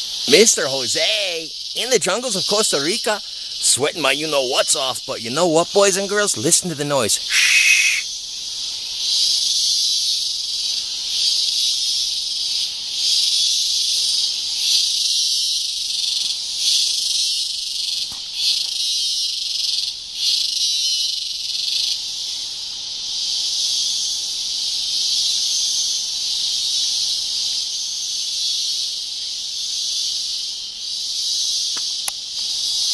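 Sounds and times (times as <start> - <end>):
jungle insects droning: 0.0 - 32.9.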